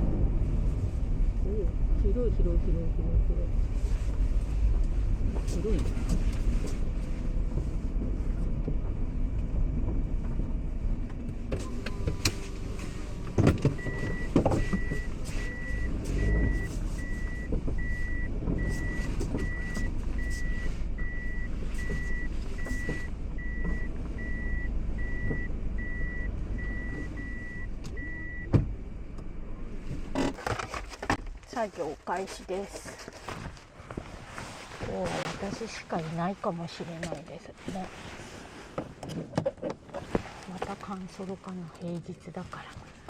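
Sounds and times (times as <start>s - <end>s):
car engine rumble: 0.0s - 43.0s
electronic warning beeps: 13.8s - 28.5s.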